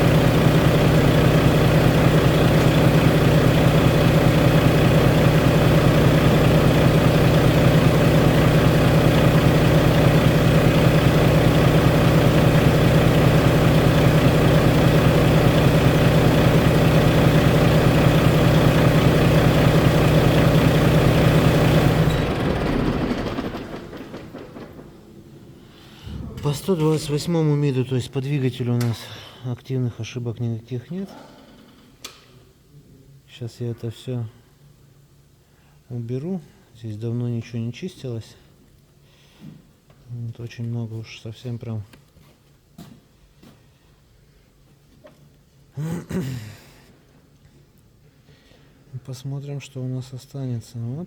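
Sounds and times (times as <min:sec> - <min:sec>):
diesel truck engine idling: 0:00.0 - 0:24.0.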